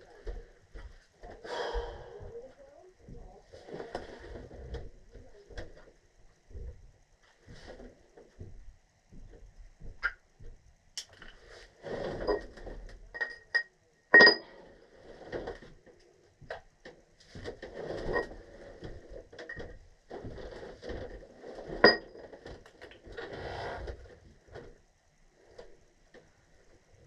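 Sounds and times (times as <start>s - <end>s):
scraping and rattling of tools: 19.4s - 23.4s.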